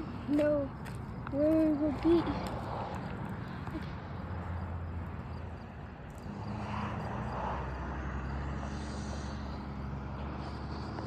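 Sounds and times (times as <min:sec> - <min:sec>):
low traffic rumble: 0:00.0 - 0:11.0
vehicle engine hum and tyre noise: 0:00.0 - 0:11.0.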